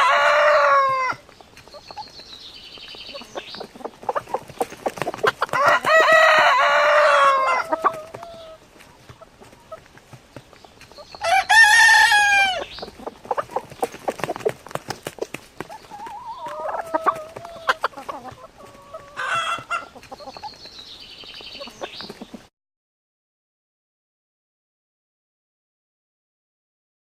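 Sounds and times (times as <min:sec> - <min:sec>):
rooster crowing: 0:00.0 - 0:01.2, 0:05.5 - 0:08.5, 0:11.2 - 0:12.6, 0:18.9 - 0:19.7
chickens clucking: 0:00.0 - 0:22.5.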